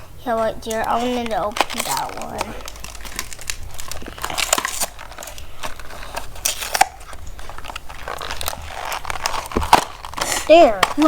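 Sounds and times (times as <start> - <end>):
plastic packaging crinkling: 0.3 - 11.0.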